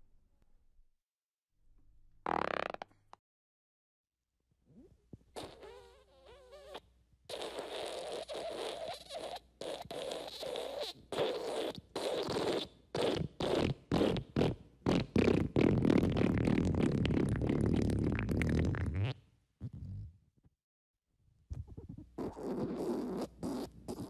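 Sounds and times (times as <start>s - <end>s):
fart sound effects: 2.2s - 3.0s, 4.8s - 20.1s, 21.6s - 24.0s.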